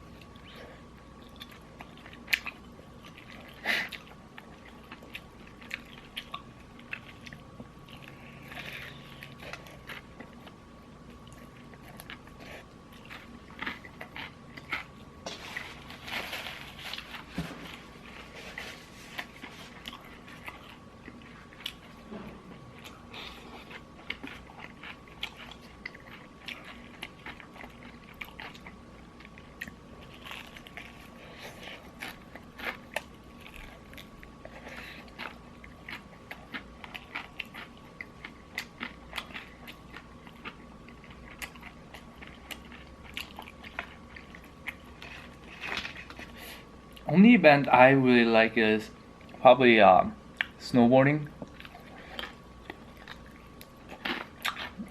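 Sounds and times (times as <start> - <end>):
faint high hum: 0.0 - 54.9
crunching fried chicken: 22.8 - 48.0, 50.4 - 54.9.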